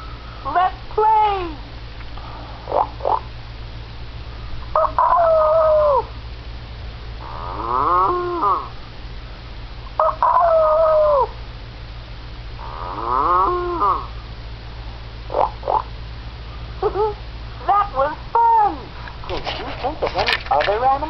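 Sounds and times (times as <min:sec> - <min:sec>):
cartoon rooster crow: 0:04.8 - 0:06.0, 0:10.0 - 0:11.3
cartoon cow moo: 0:07.3 - 0:08.7, 0:12.8 - 0:14.1.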